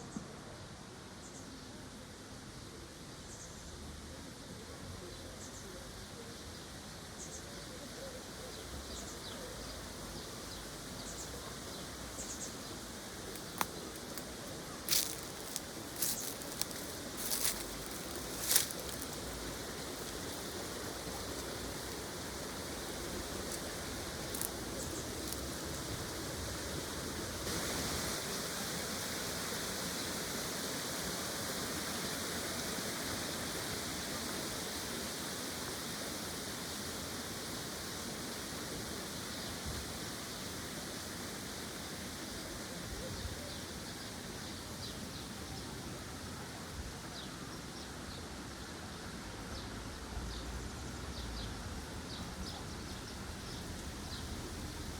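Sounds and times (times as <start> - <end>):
brighter hiss: 0.0 - 54.9
outdoor background hiss: 0.0 - 54.9.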